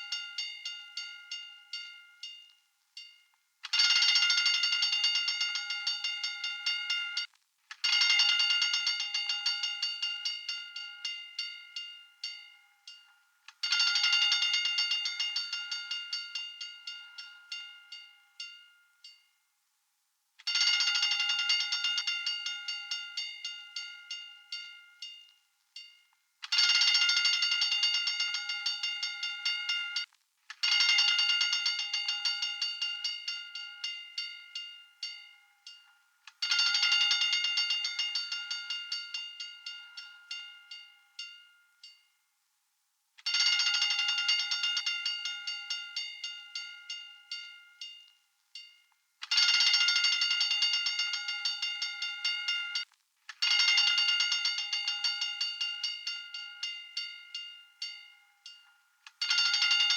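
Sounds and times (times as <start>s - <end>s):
fire alarm bell ringing: 0.0s - 19.2s, 20.5s - 42.0s, 43.3s - 59.9s.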